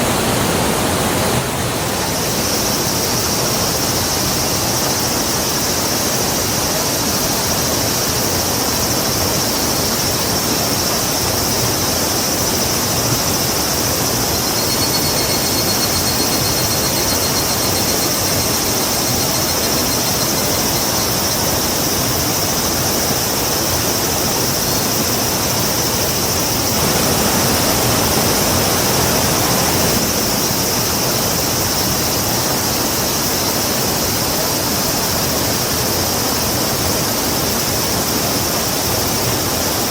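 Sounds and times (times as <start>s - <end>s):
river rushing: 0.0s - 39.9s
faint high pulsed trill: 7.2s - 22.8s.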